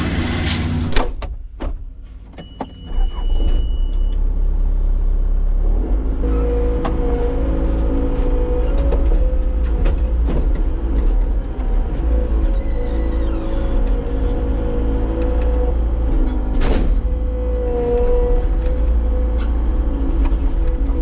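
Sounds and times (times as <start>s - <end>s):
diesel engine starting and running: 0.0s - 21.0s
high beep: 2.4s - 4.2s.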